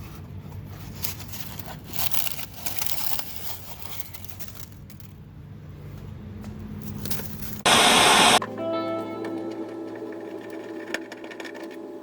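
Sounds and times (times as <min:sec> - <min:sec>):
rustling and crinkling handling: 0:00.0 - 0:07.6.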